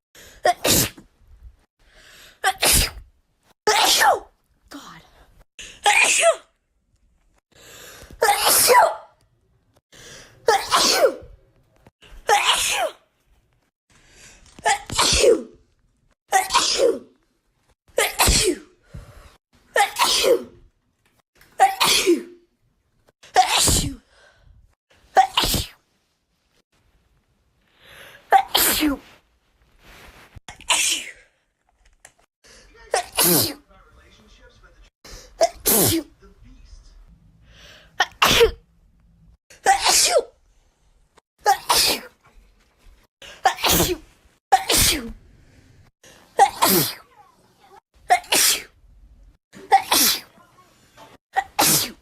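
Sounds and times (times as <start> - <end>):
woman sneezing: 0.5 - 1.0, 5.8 - 6.5, 8.2 - 9.1, 10.4 - 11.3, 12.3 - 13.0, 14.7 - 15.5, 16.3 - 17.1, 19.8 - 20.5, 23.3 - 24.0, 25.2 - 25.8, 28.3 - 29.1, 32.9 - 33.6, 35.4 - 36.1, 38.0 - 38.6, 41.4 - 42.1, 43.4 - 44.0, 44.6 - 45.1, 46.4 - 47.1, 48.1 - 48.8, 49.6 - 50.4, 51.4 - 52.0
breath in: 1.8 - 2.4.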